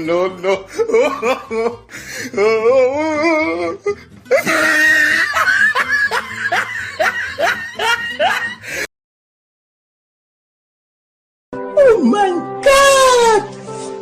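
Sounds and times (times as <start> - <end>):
breathy laughter: 3.8 - 8.9.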